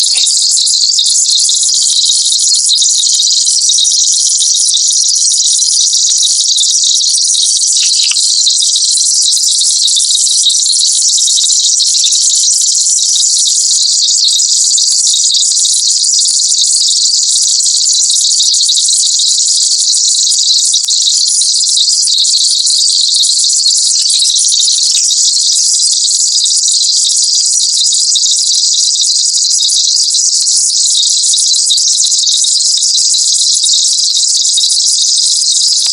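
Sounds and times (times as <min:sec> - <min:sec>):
shrill high electronic tones: 0:00.0 - 0:03.2, 0:07.8 - 0:08.4, 0:22.8 - 0:25.9.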